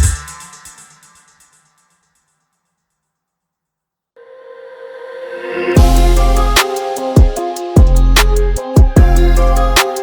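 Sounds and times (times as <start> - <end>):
sustained synthesizer chords: 4.2 - 9.8
deep bass drum hit: 5.8 - 6.5.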